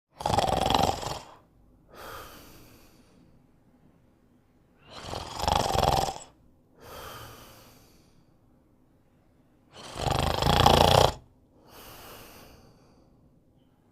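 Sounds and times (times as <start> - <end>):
dog snoring: 0.2 - 1.4, 4.9 - 6.4, 9.7 - 11.3.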